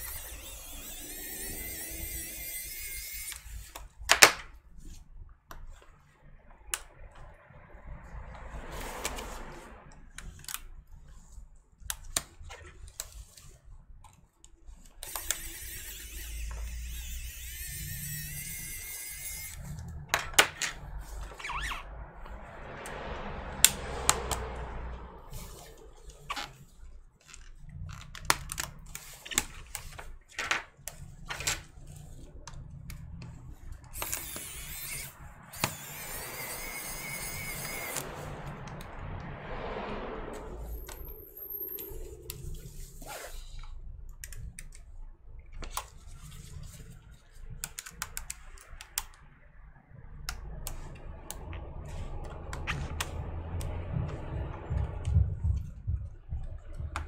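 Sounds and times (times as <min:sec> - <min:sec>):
plastic parts clicking: 0:47.6 - 0:49.2
steady low hum: 0:49.8 - 0:57.0.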